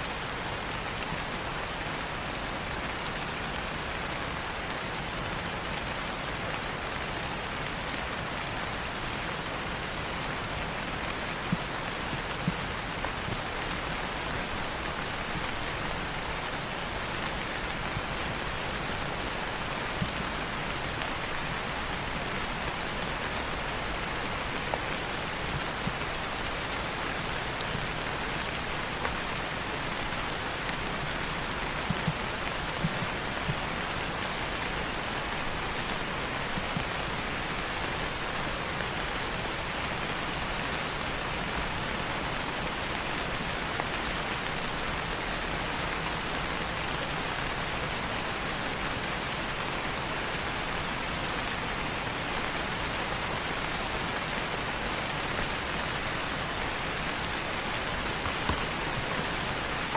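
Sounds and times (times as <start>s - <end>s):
rain falling on leaves: 0.0s - 59.9s.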